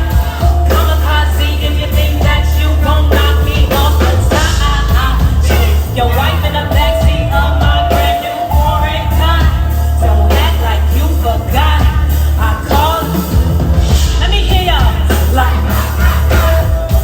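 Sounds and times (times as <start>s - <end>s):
heavy bass: 0.0s - 17.0s
woman singing lead vocal: 0.0s - 17.0s.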